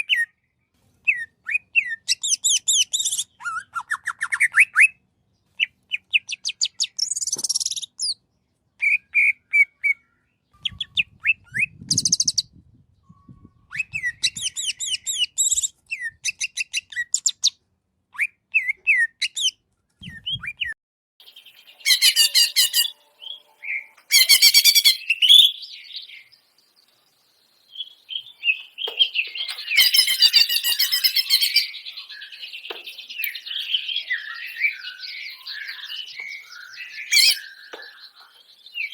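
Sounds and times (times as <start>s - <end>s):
bird singing: 21.2s - 38.9s.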